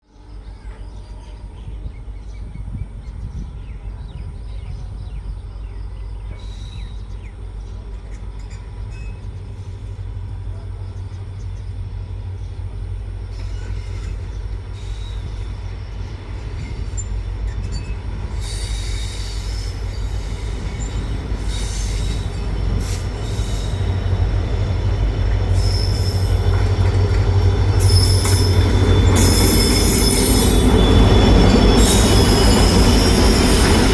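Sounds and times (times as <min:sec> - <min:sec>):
diesel locomotive humming: 0:00.1 - 0:33.9
high-pitched wheel squeals: 0:16.9 - 0:33.9.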